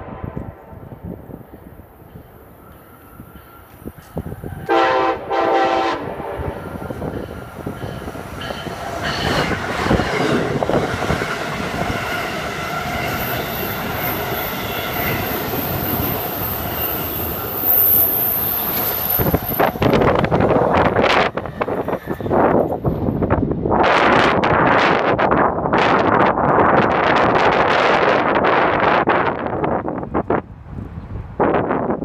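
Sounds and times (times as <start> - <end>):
train horn blasts: 0.0 - 0.8, 4.5 - 6.8
gusts of passing air: 0.0 - 32.0
train wheels on rail: 0.0 - 32.0.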